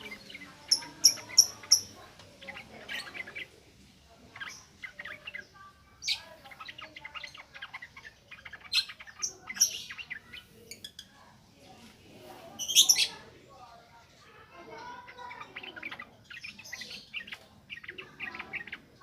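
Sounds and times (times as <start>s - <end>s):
bird singing chattering song: 0.0s - 3.6s, 4.2s - 11.7s, 12.5s - 13.3s, 14.8s - 19.0s.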